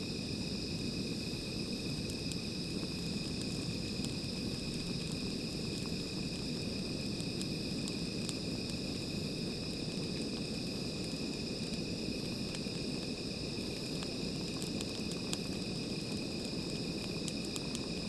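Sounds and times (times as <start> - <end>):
crickets trilling: 0.0 - 18.0.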